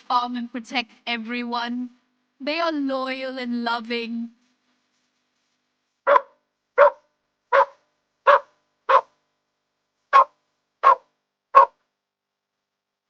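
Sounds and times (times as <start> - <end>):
dog barking: 6.1 - 9.2, 10.1 - 11.8.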